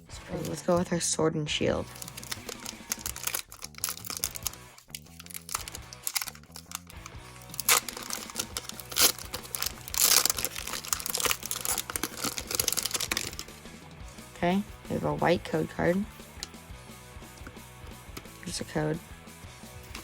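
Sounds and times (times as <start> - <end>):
foil wrapper crinkling and tearing: 0.3 - 0.8, 1.9 - 13.7.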